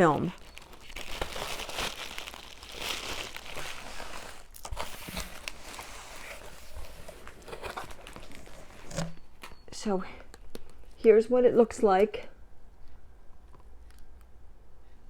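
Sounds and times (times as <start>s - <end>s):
wrapping paper crinkling: 0.0s - 9.5s.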